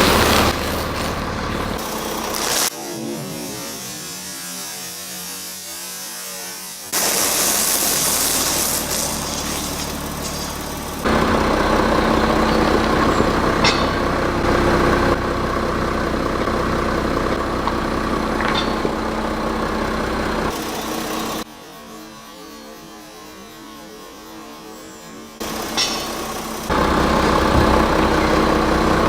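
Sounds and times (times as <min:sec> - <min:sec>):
car engine running at low revs: 0:00.0 - 0:03.8, 0:08.7 - 0:21.4, 0:26.3 - 0:29.0.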